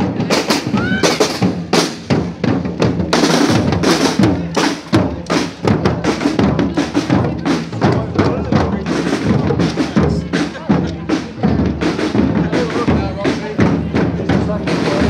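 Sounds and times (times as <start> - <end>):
bass drum: 0.0 - 15.0.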